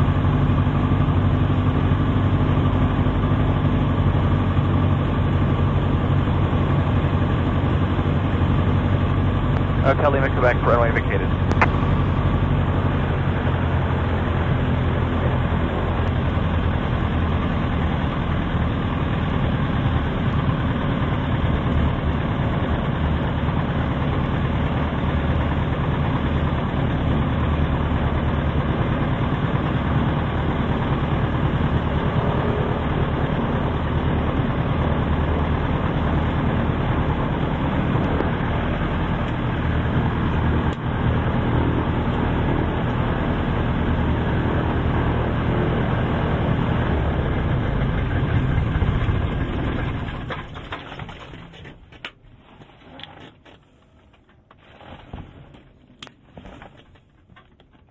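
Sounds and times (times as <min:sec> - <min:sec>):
propeller plane engine droning: 0:00.0 - 0:54.5.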